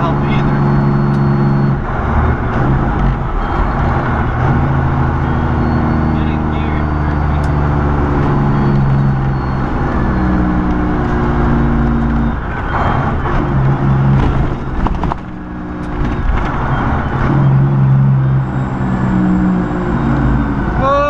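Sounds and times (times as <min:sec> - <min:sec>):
road and wind noise: 0:00.0 - 0:21.0
truck diesel engine droning: 0:00.0 - 0:21.0.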